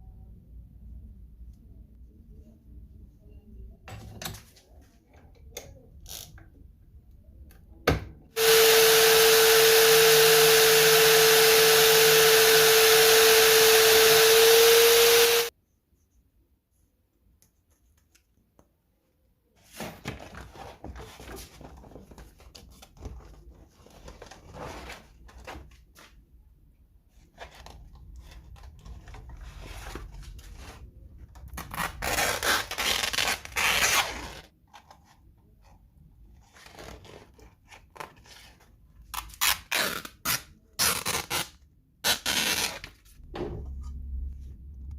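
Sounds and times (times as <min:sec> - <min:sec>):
power tool motor whining: 0:08.4 - 0:15.5.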